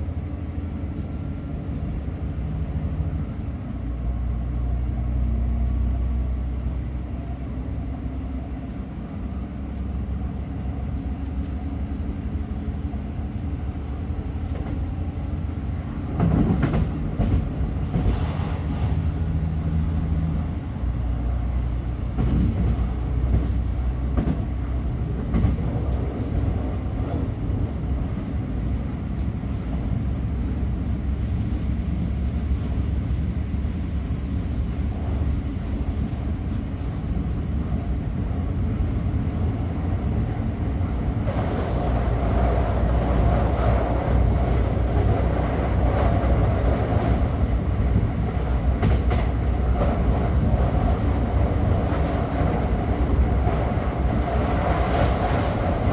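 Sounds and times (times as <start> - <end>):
train rumbling: 0.0 - 55.9
high-pitched whine: 30.9 - 36.9.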